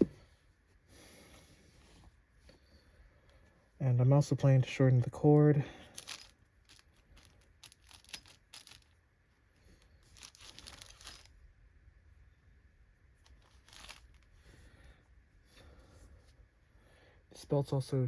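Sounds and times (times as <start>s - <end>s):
hands rustling and scraping parts: 5.8s - 11.4s, 13.2s - 14.7s.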